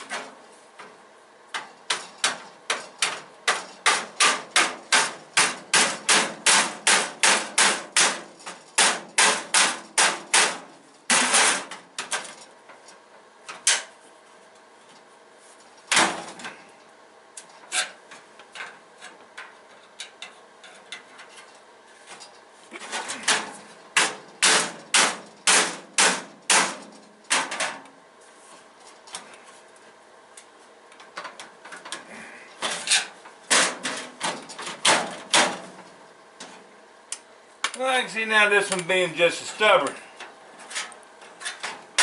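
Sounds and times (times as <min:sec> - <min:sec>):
metal drawer knocking and clanking: 0:33.5 - 0:35.7.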